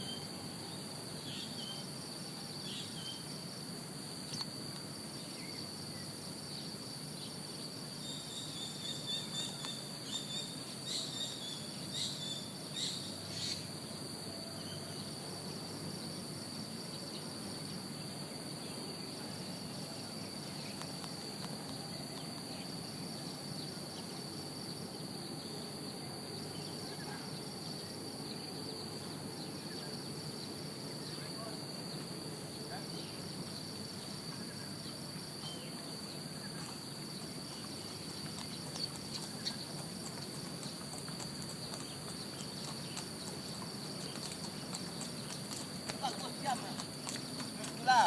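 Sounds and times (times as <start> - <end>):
insects trilling: 0.0 - 48.0.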